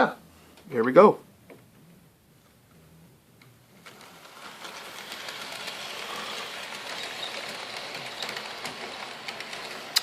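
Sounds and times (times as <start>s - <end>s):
wheels clicking over rails: 3.5s - 10.0s
model train motor rumbling: 3.7s - 10.0s.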